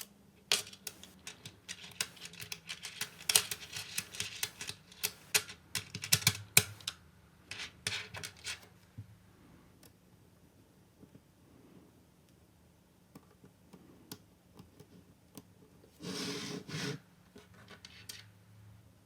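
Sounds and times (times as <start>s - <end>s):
magnetic balls clicking together: 0.5s - 7.0s.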